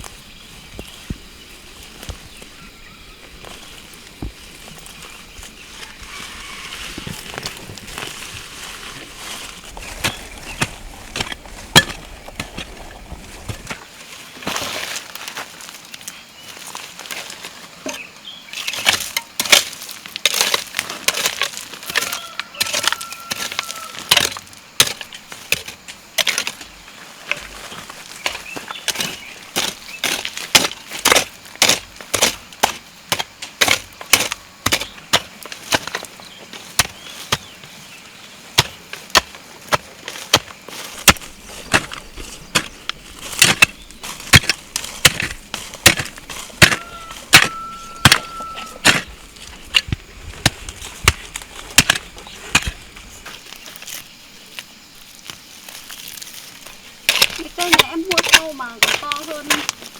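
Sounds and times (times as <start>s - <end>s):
blade chopping wood: 38.6s - 49.1s, 57.1s - 59.8s.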